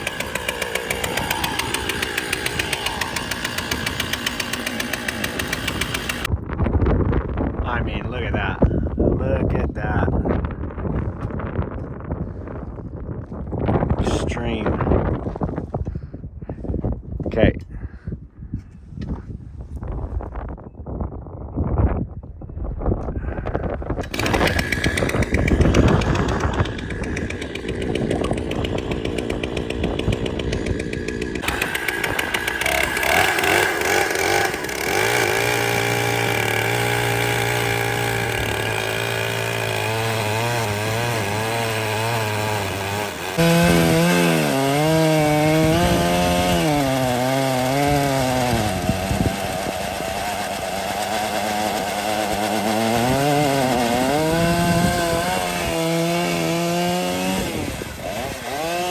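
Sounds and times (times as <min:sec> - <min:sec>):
chainsaw cutting log: 0:00.0 - 0:06.3, 0:24.0 - 0:58.9.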